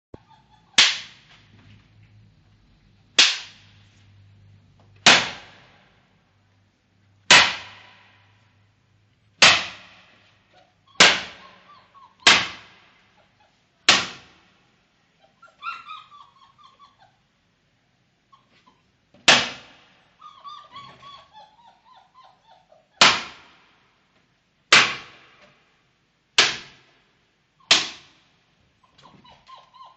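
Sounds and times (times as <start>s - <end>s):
puppies whining: 0.2s - 0.8s, 10.5s - 12.3s, 15.2s - 17.3s, 18.3s - 19.0s, 20.2s - 23.0s, 28.8s - 29.9s
sharp bangs: 3.1s - 3.9s, 7.3s - 8.4s, 12.2s - 13.0s.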